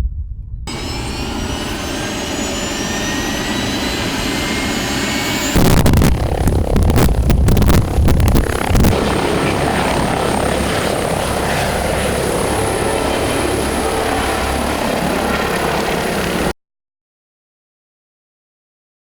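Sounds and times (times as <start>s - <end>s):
helicopter rotor and turbine: 0.7s - 16.5s
wind buffeting on microphone: 3.6s - 16.4s.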